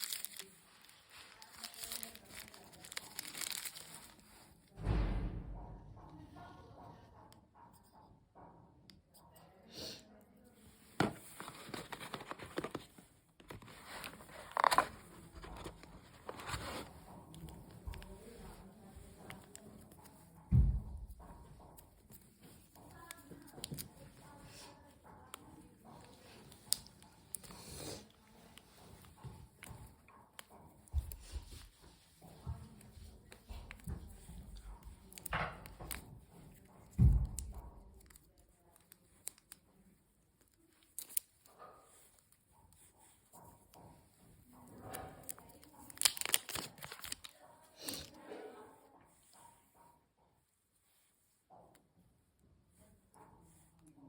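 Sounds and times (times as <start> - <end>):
packaging crinkling and rustling: 0.0 - 4.6, 11.1 - 19.9, 44.8 - 48.1
loud low thump: 4.8 - 6.0.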